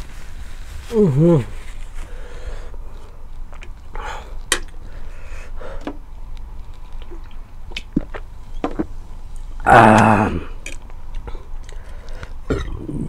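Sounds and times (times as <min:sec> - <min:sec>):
person chewing noodles: 0:02.9 - 0:05.2, 0:06.2 - 0:13.0.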